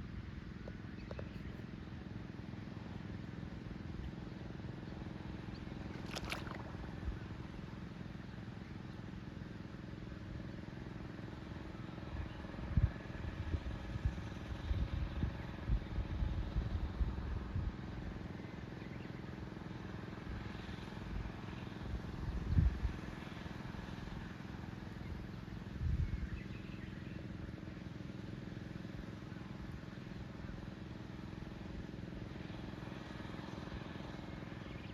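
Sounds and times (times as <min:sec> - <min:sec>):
small engine running: 0:27.2 - 0:34.9.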